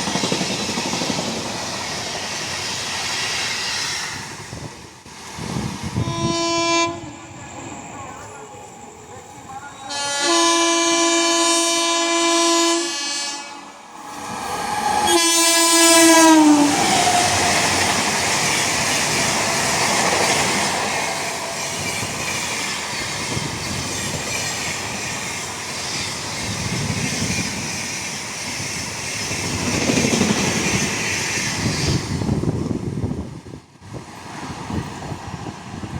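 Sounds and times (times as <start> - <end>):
train wheels on rails: 0.0 - 35.9
locomotive horn blasts: 6.0 - 7.4, 9.8 - 13.8, 15.1 - 16.7.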